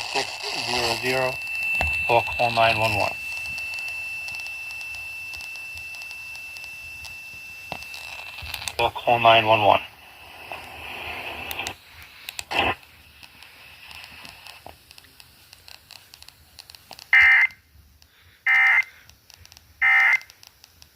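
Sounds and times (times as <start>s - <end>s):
squawking digital data tones: 0.0s - 9.9s
faint radio hiss: 0.0s - 20.9s
radio crackle: 0.0s - 20.9s.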